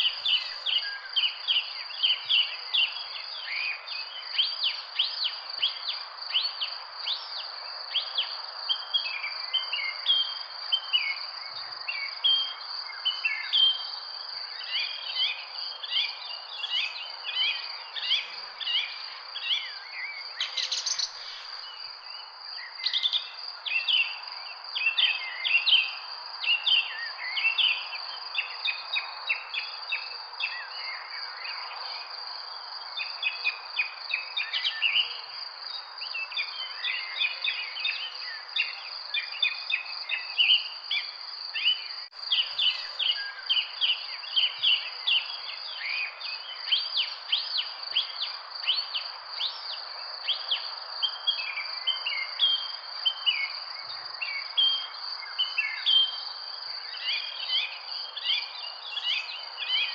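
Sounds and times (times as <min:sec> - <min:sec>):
small birds chirping: 0:00.0 - 0:08.2, 0:11.5 - 0:26.0, 0:35.7 - 0:56.2
steady background hiss: 0:00.0 - 0:29.6, 0:36.6 - 0:53.5.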